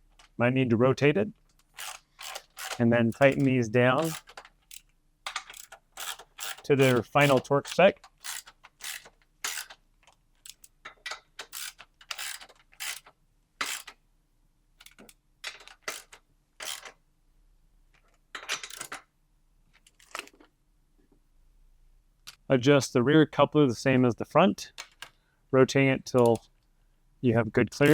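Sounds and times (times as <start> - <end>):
ratchet wrench clicking: 1.8 - 9.8, 10.4 - 14.0, 14.8 - 16.9, 18.6 - 19.0.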